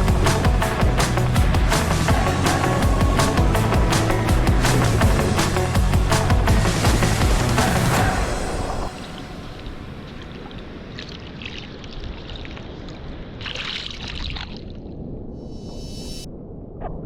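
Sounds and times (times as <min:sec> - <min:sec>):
low rumble: 0:00.0 - 0:11.0
ocean water sloshing and splashing: 0:08.3 - 0:15.3.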